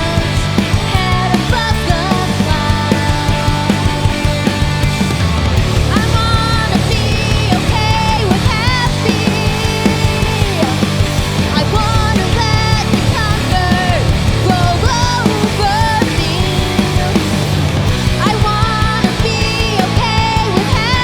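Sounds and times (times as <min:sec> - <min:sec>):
bass guitar: 0:00.0 - 0:21.0
drums beating: 0:00.0 - 0:21.0
electric guitars: 0:00.0 - 0:21.0.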